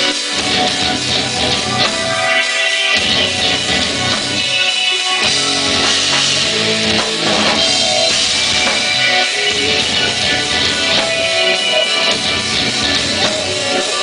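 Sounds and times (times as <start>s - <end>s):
rock band playing live: 0.0s - 14.0s
pounding bass drum: 3.0s - 4.6s, 5.2s - 13.9s.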